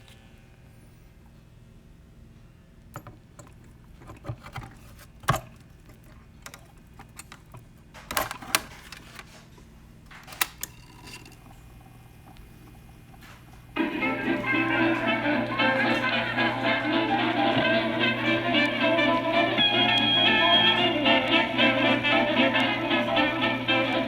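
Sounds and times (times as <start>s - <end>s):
low electrical hum: 0.0s - 24.0s
clicks and knocks handling record player: 3.0s - 11.4s
orchestral music with brass: 13.8s - 24.0s.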